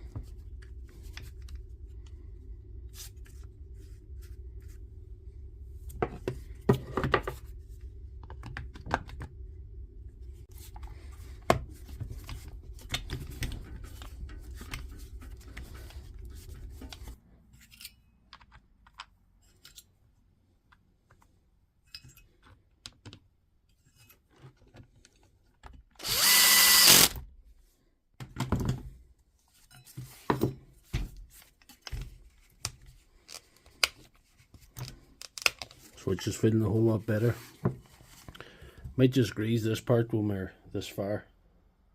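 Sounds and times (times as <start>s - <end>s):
steady low hum: 0.0s - 17.2s
power screwdriver running: 26.0s - 27.2s.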